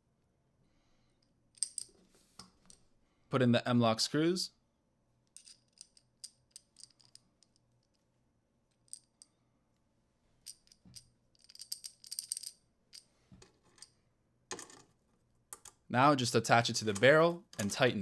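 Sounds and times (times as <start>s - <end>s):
small metal screws clinking: 1.6s - 2.0s, 5.3s - 8.0s, 8.7s - 9.4s, 10.4s - 14.9s, 16.9s - 17.9s.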